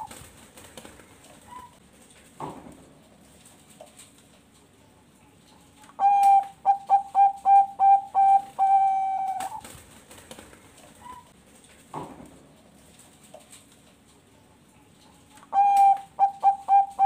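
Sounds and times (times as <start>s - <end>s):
dove cooing: 5.9s - 9.6s, 15.4s - 17.0s.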